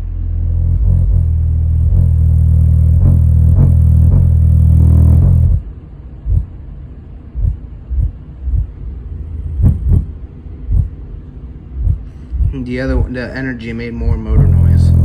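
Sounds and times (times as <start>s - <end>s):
subwoofer bass note: 0.0s - 5.7s, 9.5s - 10.9s, 14.1s - 15.0s
deep bass thumps: 0.0s - 6.5s, 7.4s - 8.8s, 9.4s - 11.0s, 11.8s - 13.1s, 14.0s - 15.0s.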